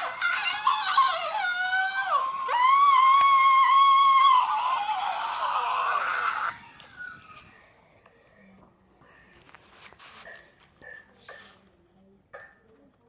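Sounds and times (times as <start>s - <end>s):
electronic whinny sound: 0.0s - 7.8s
high-pitched electronic chirping: 0.0s - 7.8s
high-pitched electronic tones: 0.0s - 7.8s.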